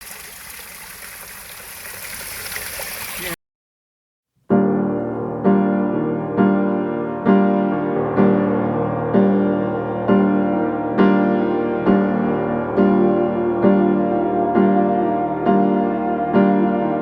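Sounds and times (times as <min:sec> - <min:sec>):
rushing stream water: 0:00.0 - 0:03.4
gentle piano music: 0:04.5 - 0:17.0.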